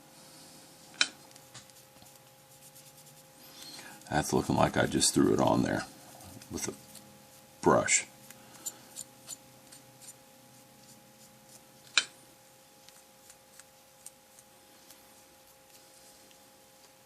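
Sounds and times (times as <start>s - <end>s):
faint steady hum: 0.0s - 17.0s
brush strokes on plastic model: 1.3s - 3.5s, 6.4s - 11.8s.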